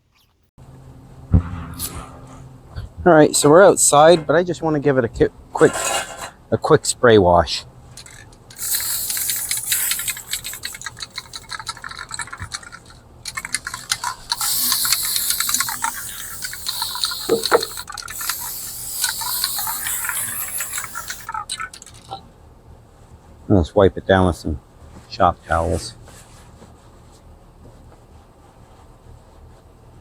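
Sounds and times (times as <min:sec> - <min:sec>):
spray cleaner hissing: 0:08.0 - 0:22.0.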